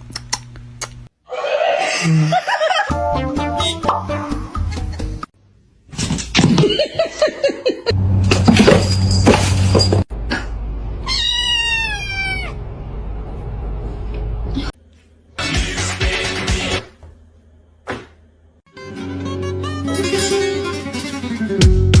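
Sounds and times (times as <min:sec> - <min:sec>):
cat meowing: 0:11.0 - 0:12.6.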